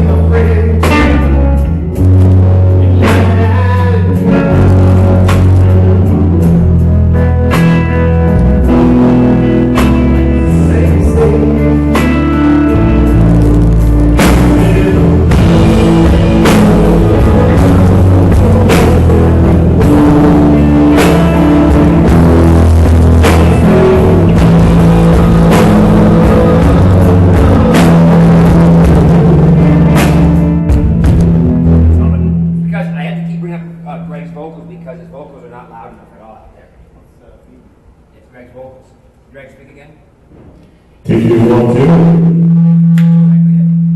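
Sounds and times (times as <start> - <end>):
electric guitar: 0.0 - 34.2
drum kit and cymbals: 0.0 - 35.8
bass guitar: 0.0 - 36.1, 40.4 - 43.9.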